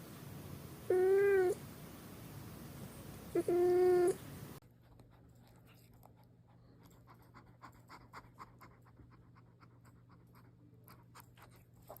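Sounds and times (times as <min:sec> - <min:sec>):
low steady hum: 0:00.0 - 0:07.9.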